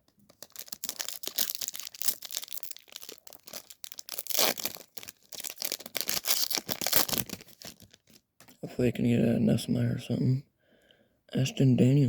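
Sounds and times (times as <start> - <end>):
wrapper crinkling and tearing: 0.2 - 8.6.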